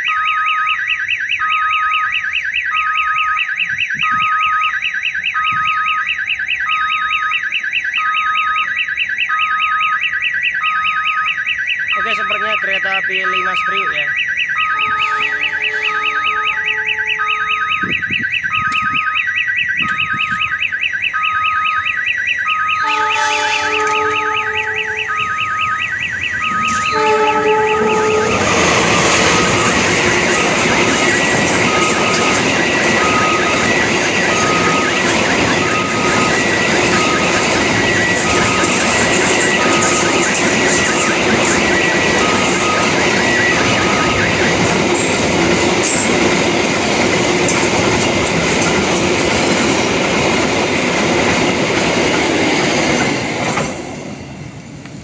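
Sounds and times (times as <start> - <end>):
repeating beep: 0.0 - 23.0, 23.8 - 46.4
level crossing siren warbling: 0.0 - 46.2
train horn blasts: 14.8 - 17.5, 22.8 - 25.2, 26.8 - 28.7
train wheels on rails: 23.0 - 55.0.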